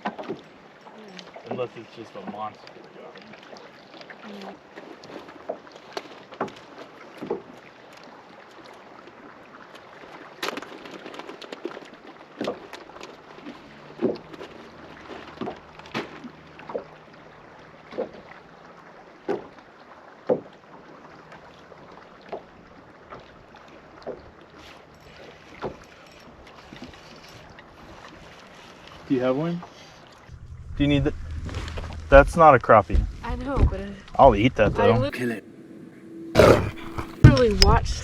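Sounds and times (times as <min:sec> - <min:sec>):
wind: 0:00.0 - 0:38.0
water washing: 0:20.7 - 0:38.0.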